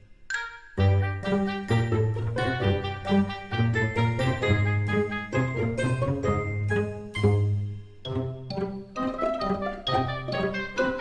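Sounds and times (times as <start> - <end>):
light tinkly tune: 0.0 - 11.0.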